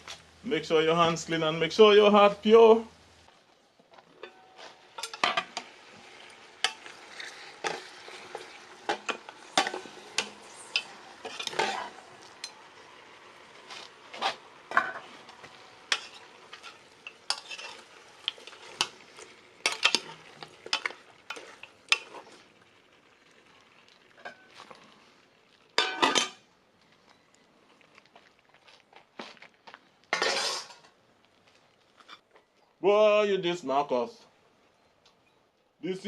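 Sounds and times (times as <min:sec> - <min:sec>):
frying sizzle: 0:00.0 - 0:28.3
spoon knocking and scraping pot: 0:15.9 - 0:17.8, 0:19.6 - 0:22.3.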